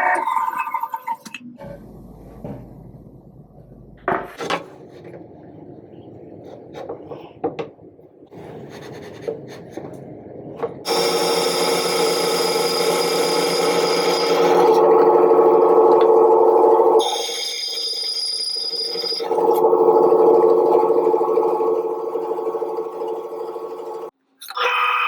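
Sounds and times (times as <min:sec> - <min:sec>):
bandsaw motor running: 0:10.9 - 0:24.1.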